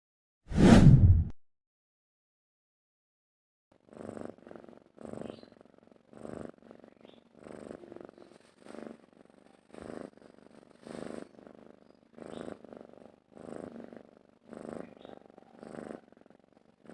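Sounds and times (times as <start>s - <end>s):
cat purring: 3.7s - 16.9s.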